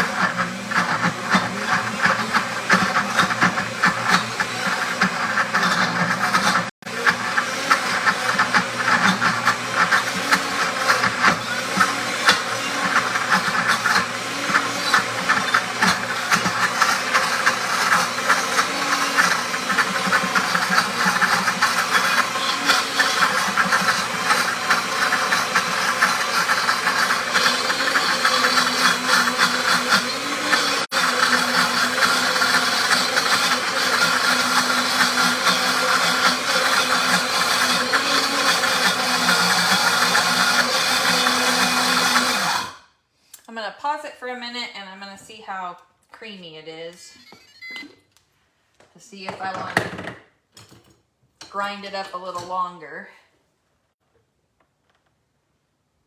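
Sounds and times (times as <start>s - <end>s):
blender grinding peanuts: 0.0s - 42.9s.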